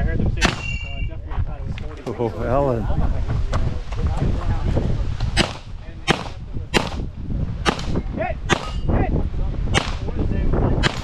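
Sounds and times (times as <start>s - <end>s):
wind rumble on microphone: 0.0s - 11.0s
pistol shots: 0.4s - 0.8s, 5.4s - 7.1s, 7.7s - 8.8s, 9.8s - 10.1s.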